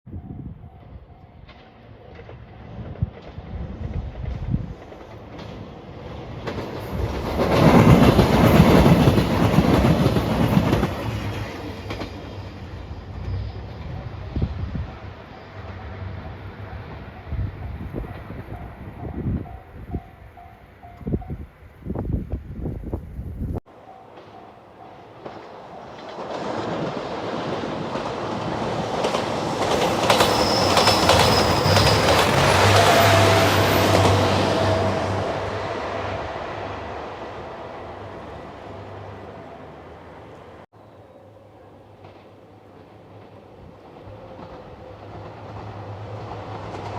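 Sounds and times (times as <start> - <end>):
diesel train passing: 0.1 - 46.9
wheels clacking over rail joints: 1.4 - 14.0, 23.7 - 36.6
wheels clattering over rail joints: 23.9 - 34.6
thin high squeal: 30.0 - 34.1.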